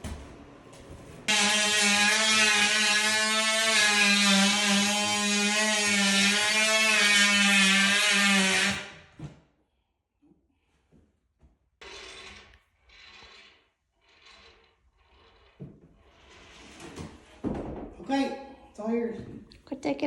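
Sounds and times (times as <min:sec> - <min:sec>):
power tool motor running: 0:01.3 - 0:08.9.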